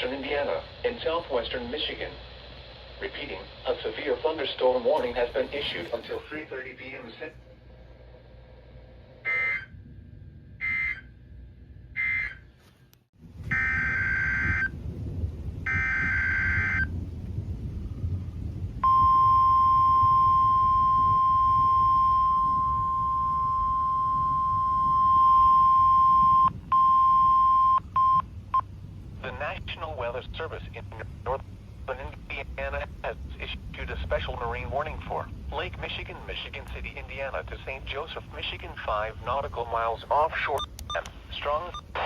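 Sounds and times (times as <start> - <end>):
low hum: 0.0 - 42.0
steady warning alarm tone: 9.2 - 12.5, 13.5 - 14.8, 15.6 - 17.0, 18.8 - 28.7, 40.6 - 42.0
alert data bursts: 40.6 - 42.0.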